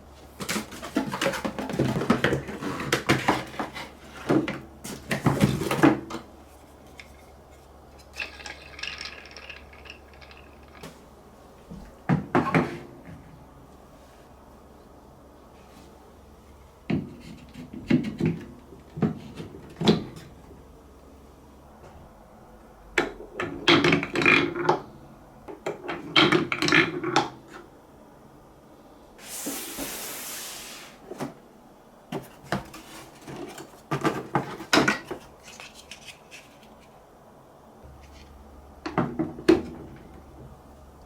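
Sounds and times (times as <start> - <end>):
marbles clattering down track: 8.1 - 10.9
marble rolling hiss: 29.2 - 31.0.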